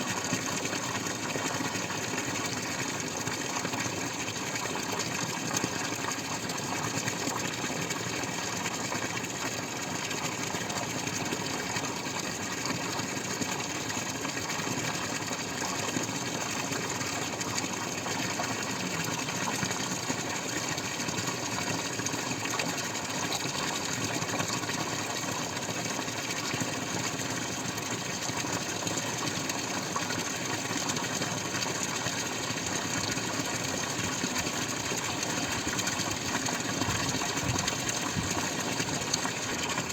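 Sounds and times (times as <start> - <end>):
water dripping and trickling: 15.2 - 39.9.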